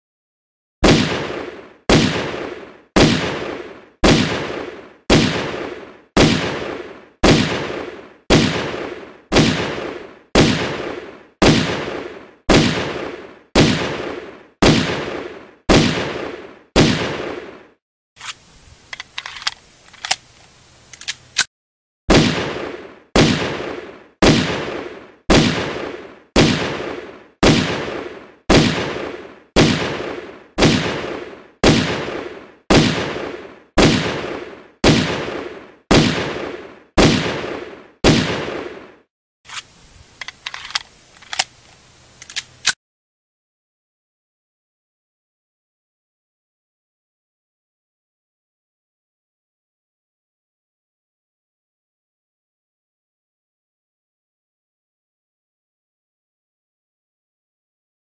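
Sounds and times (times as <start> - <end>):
pistol shots: 0.8 - 17.7, 22.1 - 39.0
sharp clicks: 18.2 - 21.5, 39.5 - 42.8.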